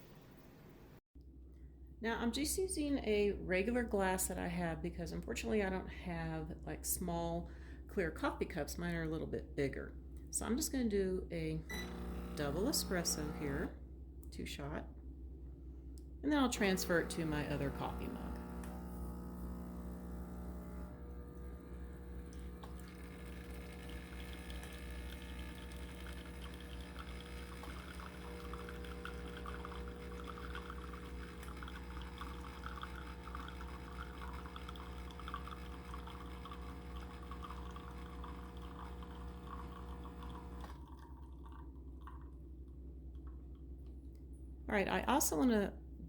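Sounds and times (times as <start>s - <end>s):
espresso machine pump humming: 11.7s - 13.7s, 16.4s - 42.3s
espresso trickling into glass: 16.6s - 42.3s.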